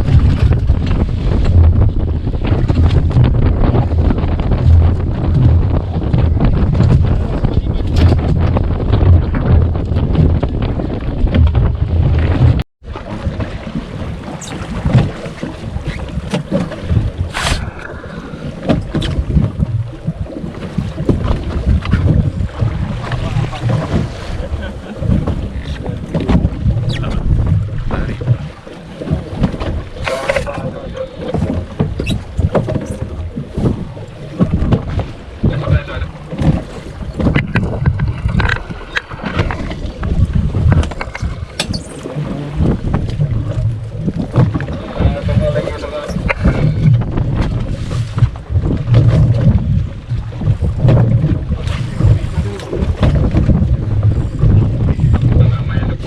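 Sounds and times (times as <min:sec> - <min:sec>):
knocks against hull: 0:00.0 - 0:17.8, 0:18.5 - 0:56.0
low rumble: 0:00.0 - 0:56.0
wind buffeting microphone: 0:00.0 - 0:56.0
sharp knocks and clicks: 0:31.3 - 0:33.8, 0:36.3 - 0:39.7, 0:40.6 - 0:43.2.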